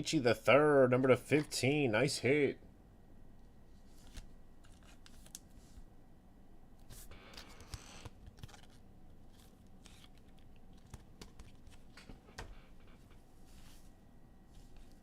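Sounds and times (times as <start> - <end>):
foil pack crinkling: 7.7 - 11.9.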